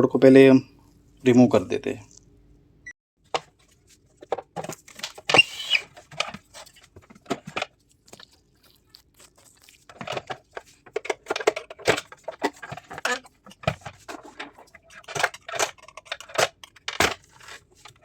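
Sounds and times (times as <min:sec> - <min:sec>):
circuit board scraping: 0:05.4 - 0:05.9.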